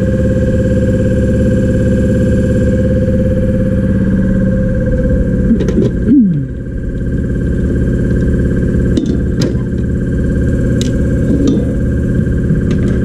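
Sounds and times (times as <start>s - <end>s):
motor running steadily: 0.0s - 13.0s
short falling whine: 2.9s - 7.1s.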